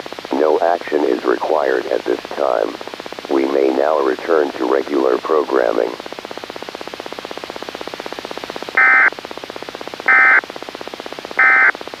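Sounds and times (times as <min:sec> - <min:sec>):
buzzing radio static: 0:08.8 - 0:09.1, 0:10.1 - 0:10.4, 0:11.4 - 0:11.7
digital data tone bursts: 0:08.8 - 0:09.1, 0:10.1 - 0:10.4, 0:11.4 - 0:11.7.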